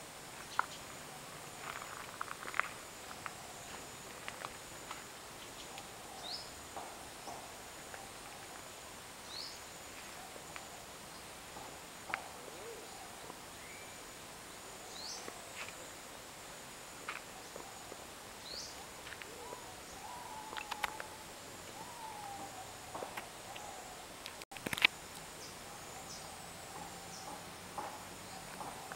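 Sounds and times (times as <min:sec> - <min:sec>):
high insect drone: 0:00.0 - 0:28.9
lower animal calls: 0:18.7 - 0:24.2.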